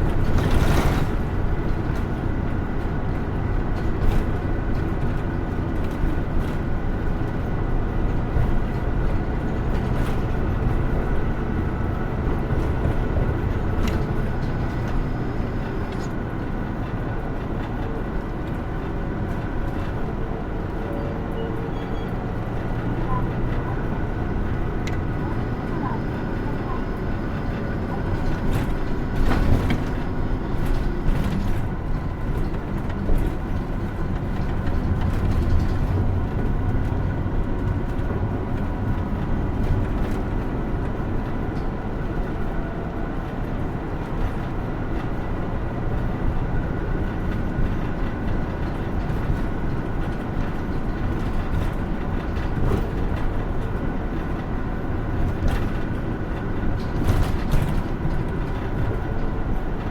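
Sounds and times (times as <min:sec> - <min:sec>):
bus engine and road noise: 0:00.0 - 0:59.9.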